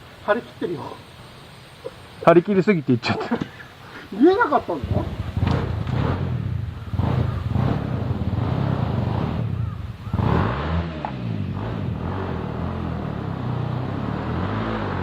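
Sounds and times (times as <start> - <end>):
motorcycle engine running: 4.8 - 15.0.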